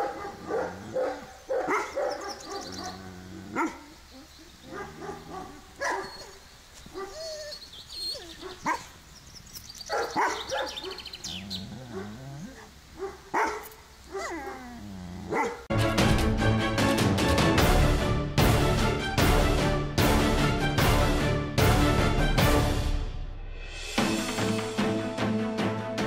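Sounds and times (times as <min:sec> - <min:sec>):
dog barking: 0:00.0 - 0:03.9, 0:04.6 - 0:07.2, 0:08.4 - 0:08.9, 0:09.9 - 0:11.1, 0:11.9 - 0:15.7.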